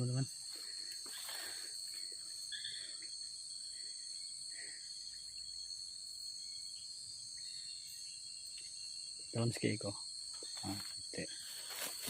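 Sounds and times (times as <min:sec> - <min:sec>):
crickets shrilling: 0:00.0 - 0:12.0
faint soft rustles: 0:10.6 - 0:12.0.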